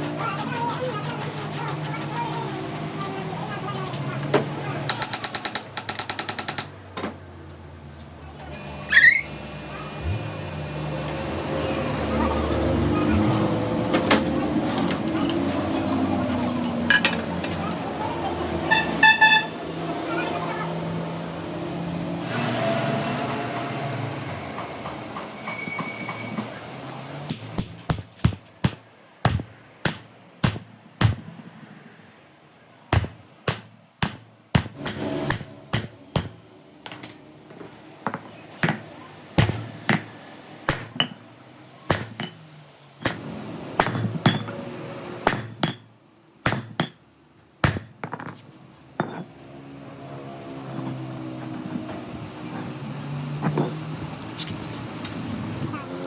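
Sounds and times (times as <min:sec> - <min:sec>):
hammer striking metal: 0:27.3 - 0:31.3, 0:32.9 - 0:37.2, 0:38.6 - 0:41.2, 0:41.9 - 0:42.4, 0:43.0 - 0:44.6, 0:45.2 - 0:47.0.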